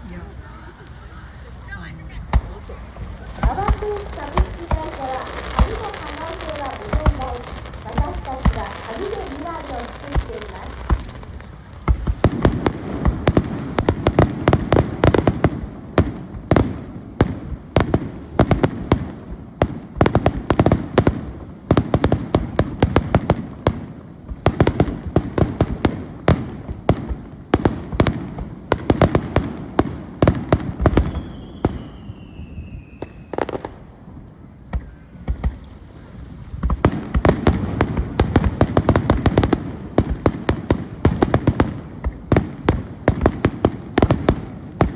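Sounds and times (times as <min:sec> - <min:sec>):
fireworks bangs and crackles: 0:00.0 - 0:44.9
falling firework whistle: 0:30.9 - 0:33.8.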